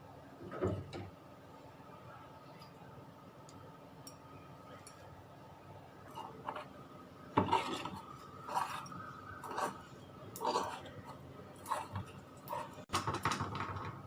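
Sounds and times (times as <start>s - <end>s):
faint steady hum: 0.0s - 14.0s
utensil scraping a dish: 6.1s - 6.8s, 7.4s - 12.9s.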